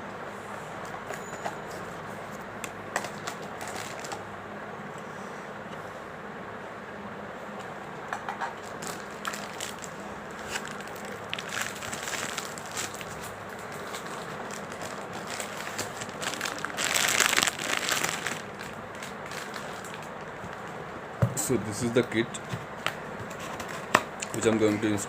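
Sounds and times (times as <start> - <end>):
packaging rustling and clicking: 2.9 - 4.2, 8.6 - 20.8.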